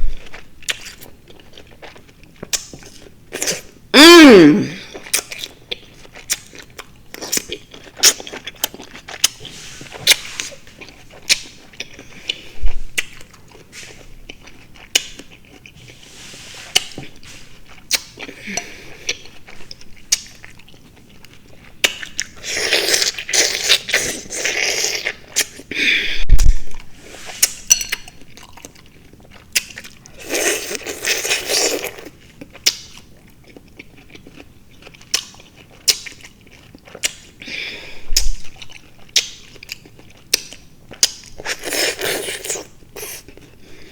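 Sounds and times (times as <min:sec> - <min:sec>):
chewing fresh fruit: 0:00.0 - 0:03.9, 0:04.8 - 0:43.9.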